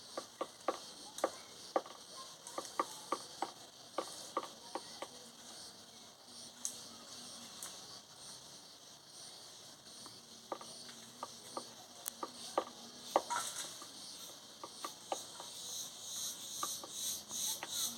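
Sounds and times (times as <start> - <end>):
insects chirring: 0.0 - 17.9
woodpecker pecking at wood: 16.5 - 17.8.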